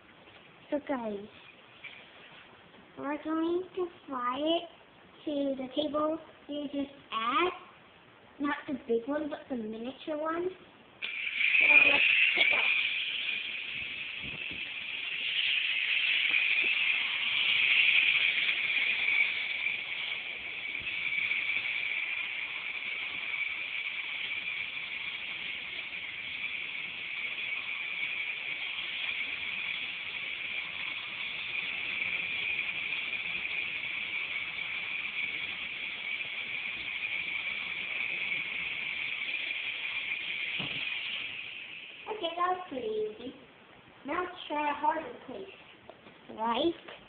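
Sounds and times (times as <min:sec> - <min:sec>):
toy helicopter motor whirring: 0:11.0 - 0:43.3.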